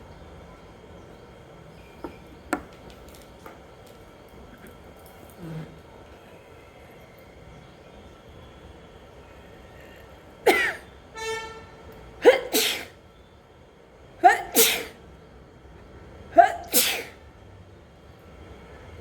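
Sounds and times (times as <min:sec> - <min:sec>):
person sneezing: 0:12.2 - 0:12.9, 0:14.2 - 0:15.0, 0:16.4 - 0:17.2.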